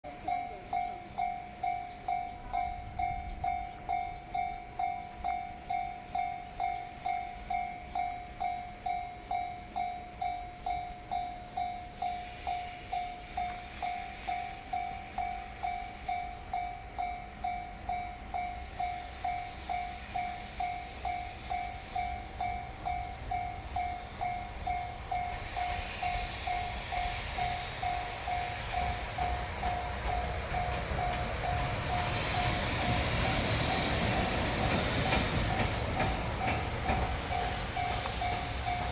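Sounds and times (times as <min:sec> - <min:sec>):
approaching train rushing: 0:00.1 - 0:38.9.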